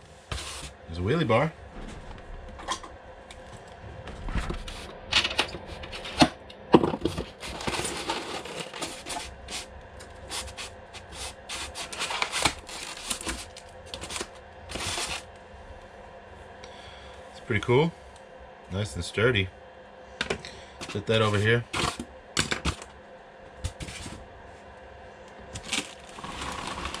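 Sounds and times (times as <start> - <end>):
styrofoam and cardboard scraping: 0.1 - 0.8, 7.0 - 15.3, 20.8 - 22.0, 23.7 - 24.2, 25.5 - 27.0.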